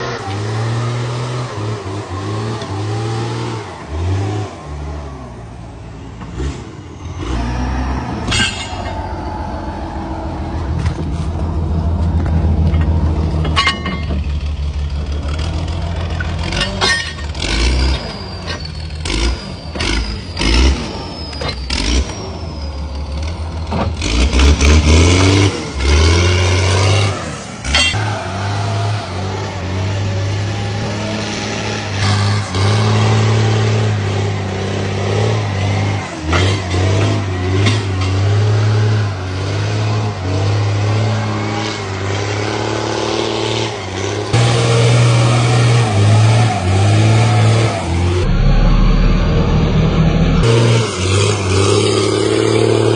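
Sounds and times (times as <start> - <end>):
diesel engine revving under load: 0.0 - 52.9
sharp knocks and clanks: 12.2 - 14.6.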